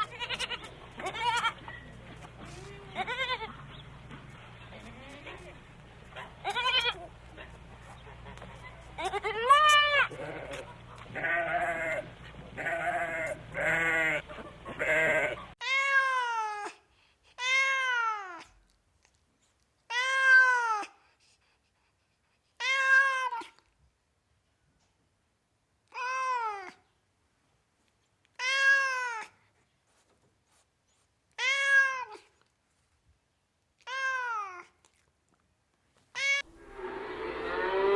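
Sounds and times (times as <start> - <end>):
goat bleating: 0.0 - 16.4
cat meowing: 36.2 - 36.5.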